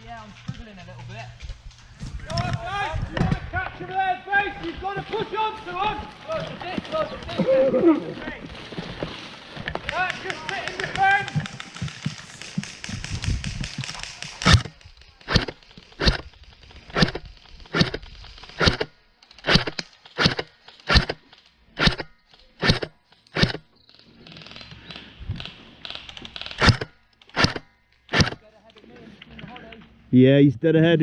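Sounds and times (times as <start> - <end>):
rustling handling noise: 3.8 - 18.6
airsoft gun shots: 13.8 - 16.3, 18.6 - 21.2, 26.4 - 28.4.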